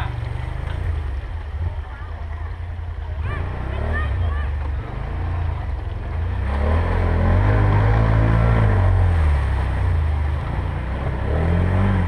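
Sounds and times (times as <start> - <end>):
quad bike engine revving: 3.2 - 12.0.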